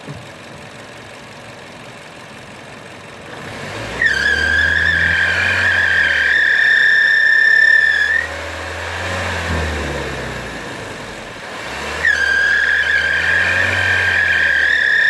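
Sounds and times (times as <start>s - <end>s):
high engine whistle: 3.9s - 8.4s, 12.0s - 15.0s.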